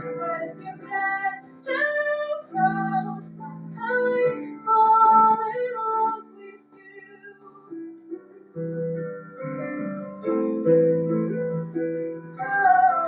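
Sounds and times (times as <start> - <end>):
woman singing a pop ballad: 0.0 - 7.7
instrumental accompaniment: 0.0 - 13.0.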